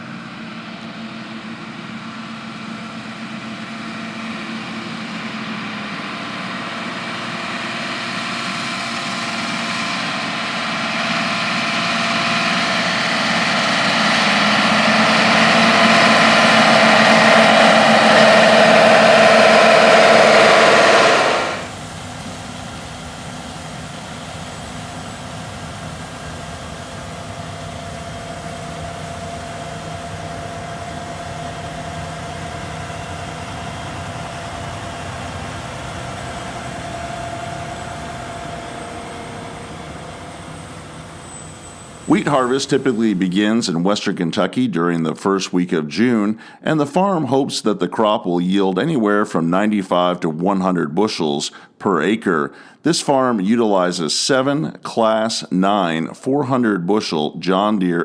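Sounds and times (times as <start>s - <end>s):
farm machine engine running: 0.0s - 43.8s.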